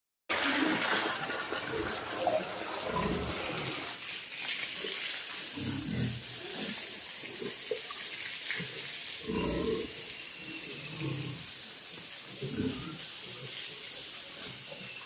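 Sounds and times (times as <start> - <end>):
water splashing and spraying: 0.3 - 15.0
pig grunting: 2.8 - 3.9, 5.6 - 6.8, 9.2 - 10.0, 12.4 - 13.6.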